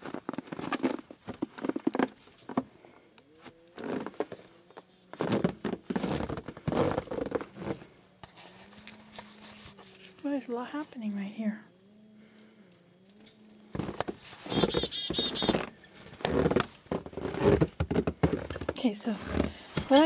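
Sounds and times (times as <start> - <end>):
footsteps crunching in snow: 3.3 - 10.2, 13.7 - 20.0.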